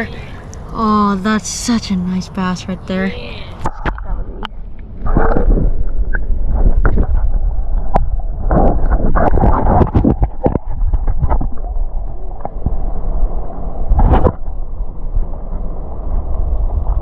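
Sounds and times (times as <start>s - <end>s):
wind rumbling on microphone: 0.0s - 17.0s
microphone handling noise: 3.5s - 12.8s, 13.9s - 14.5s.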